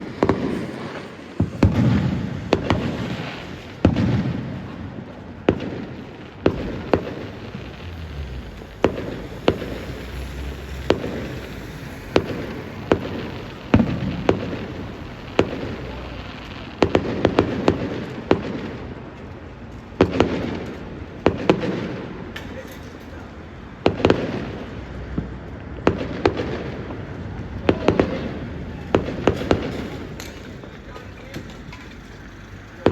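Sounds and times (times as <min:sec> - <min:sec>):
fireworks bangs and cracks: 0:00.0 - 0:32.9
echoing rumble: 0:05.7 - 0:19.1, 0:23.5 - 0:32.9.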